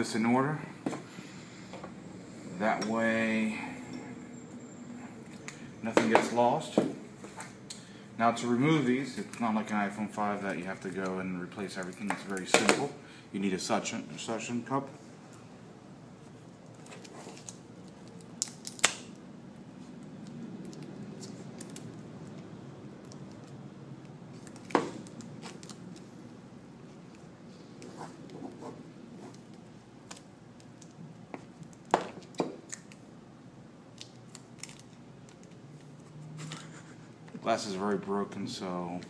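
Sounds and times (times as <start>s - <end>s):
sharp clicks and snaps: 20.2s - 26.0s.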